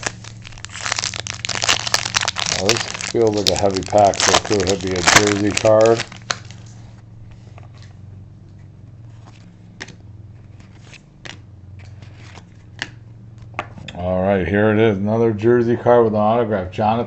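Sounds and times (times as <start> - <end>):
cards clicking and rustling: 0.0 - 6.8, 9.1 - 13.7
low steady hum: 0.0 - 17.0.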